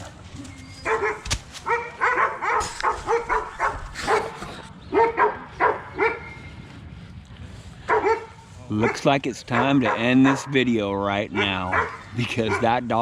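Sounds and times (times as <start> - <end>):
dog barking: 0.8 - 6.4, 7.9 - 10.6, 11.3 - 12.8.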